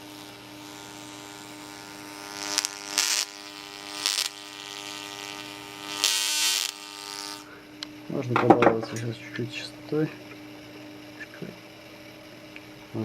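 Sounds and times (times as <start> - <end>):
hissing spark discharge: 0.0 - 7.5
tesla coil buzzing: 0.0 - 13.0.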